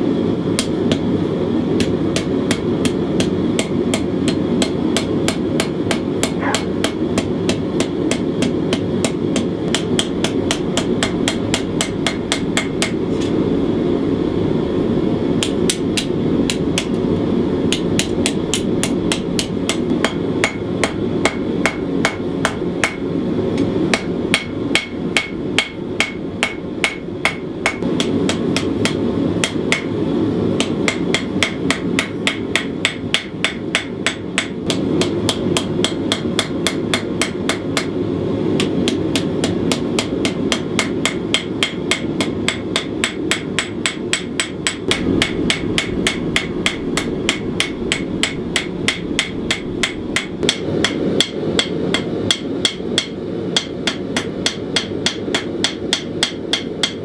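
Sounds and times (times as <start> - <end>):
hammer striking steel on anvil: 1.8 - 13.3, 15.4 - 17.0, 17.7 - 30.0, 30.6 - 38.0, 38.6 - 57.0
low rushing noise: 44.9 - 52.3.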